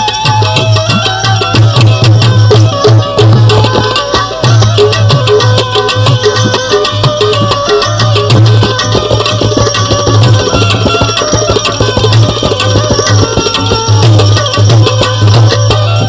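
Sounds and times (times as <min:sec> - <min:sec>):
melodic instrument lines: 0:00.0 - 0:16.0
tabla playing a driving rhythm: 0:00.0 - 0:16.0.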